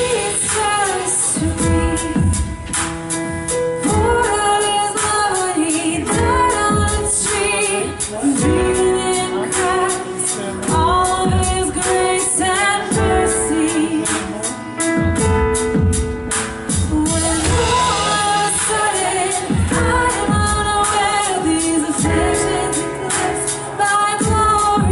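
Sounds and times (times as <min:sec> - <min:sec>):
steady drum beat: 0:00.0 - 0:24.9
woman singing lead: 0:00.0 - 0:24.9
worship band playing: 0:00.0 - 0:24.9.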